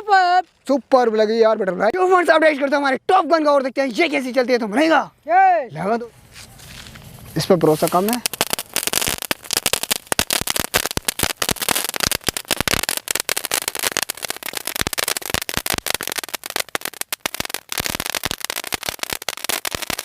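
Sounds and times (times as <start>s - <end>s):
crackling firework pops: 6.4s - 20.0s.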